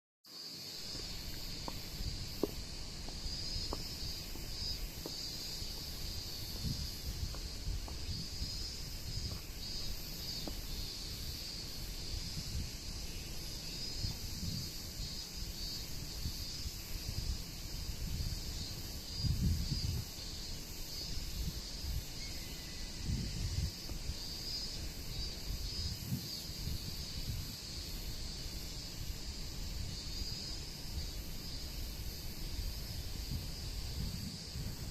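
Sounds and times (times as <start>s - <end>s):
insects droning: 0.3s - 34.9s
wind buffeting microphone: 1.0s - 34.9s.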